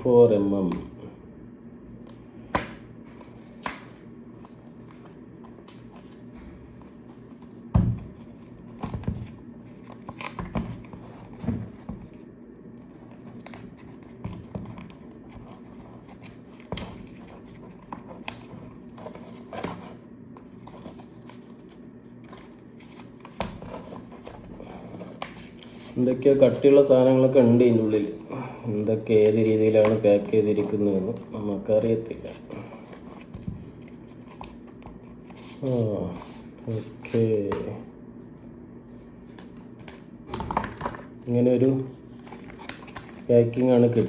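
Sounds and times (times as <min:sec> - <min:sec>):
steady low hum: 0:00.0 - 0:44.0
cardboard box packaging rustling: 0:41.8 - 0:44.0.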